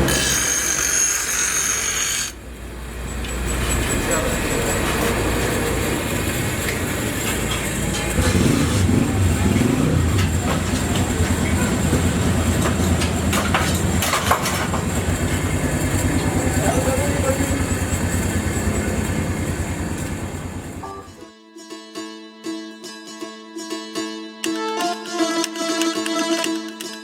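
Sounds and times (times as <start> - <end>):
machine engine pulsing: 0.0 - 21.2.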